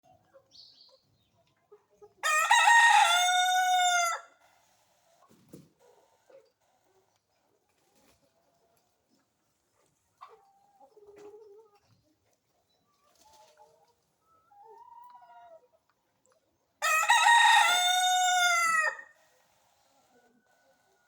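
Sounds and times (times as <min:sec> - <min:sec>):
chickens clucking softly: 0:00.0 - 0:21.0
rooster crowing: 0:02.2 - 0:04.3, 0:16.8 - 0:19.1.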